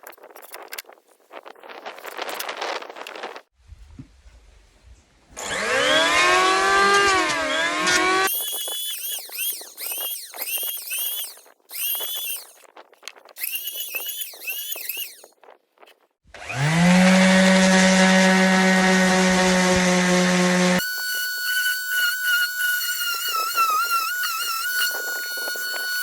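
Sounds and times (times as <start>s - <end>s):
motor spinning up to hum: 5.4s - 12.6s, 16.3s - 26.0s
power tool whining in bursts: 5.4s - 12.6s, 13.4s - 15.2s, 16.3s - 26.0s.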